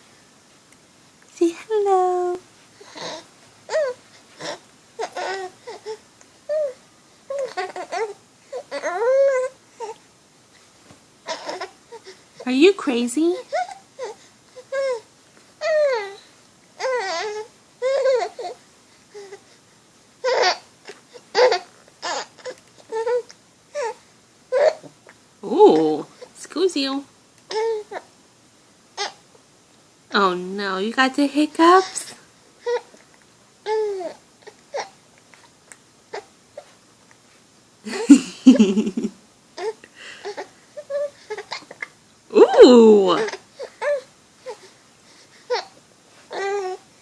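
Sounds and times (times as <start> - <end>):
baby crying and whimpering: 2.8 - 10.0, 11.2 - 12.2, 13.3 - 19.6, 20.2 - 24.9, 27.5 - 28.1, 31.8 - 33.0, 33.6 - 35.0, 39.6 - 46.9.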